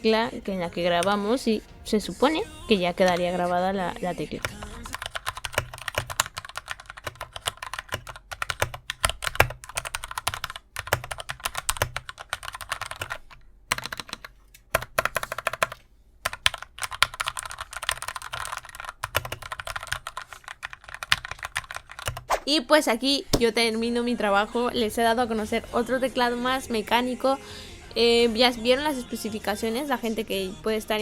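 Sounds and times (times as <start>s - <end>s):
fast typing on mechanical keyboard: 4.4s - 22.3s.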